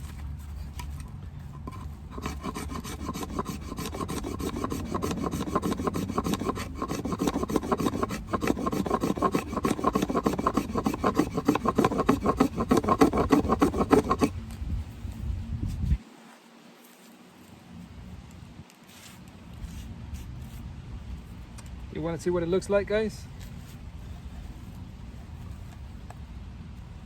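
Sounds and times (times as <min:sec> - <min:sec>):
knife scraping wood: 0:01.6 - 0:14.4.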